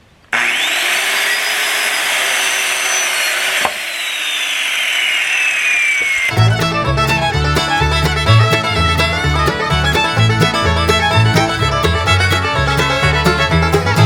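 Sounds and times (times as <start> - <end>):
power saw cutting board: 0.3 - 10.6.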